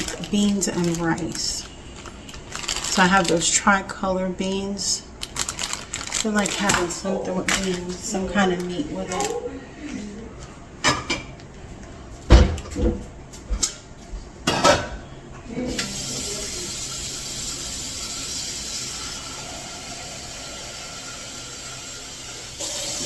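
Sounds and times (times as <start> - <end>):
kitchen items clattering: 0.0 - 11.4
tap water running into sink: 15.7 - 23.0.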